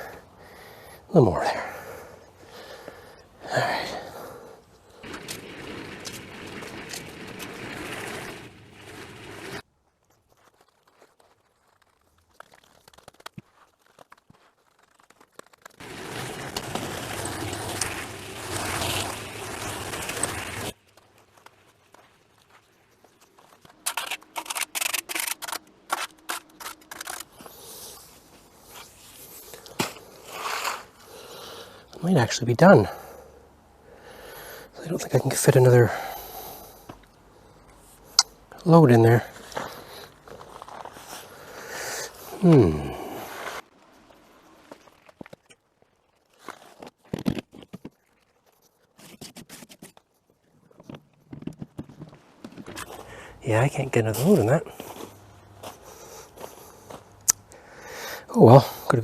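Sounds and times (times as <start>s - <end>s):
tool scraping wet concrete: 5.0s - 9.6s, 15.8s - 20.8s, 23.6s - 27.6s, 29.8s - 31.0s.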